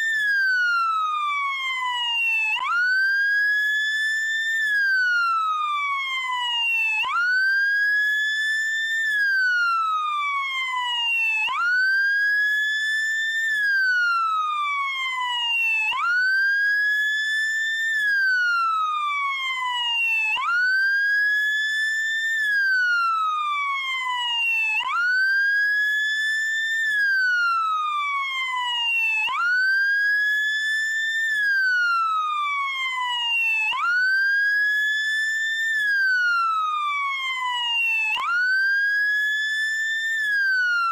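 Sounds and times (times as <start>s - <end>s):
police siren wailing: 22.3s - 40.9s.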